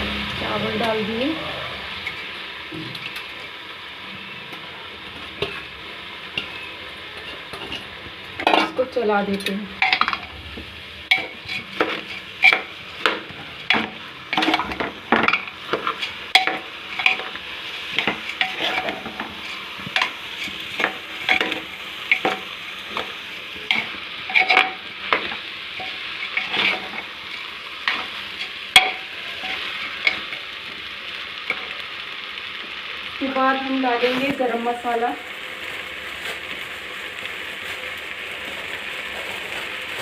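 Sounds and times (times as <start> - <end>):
food sizzling: 0.0 - 40.0.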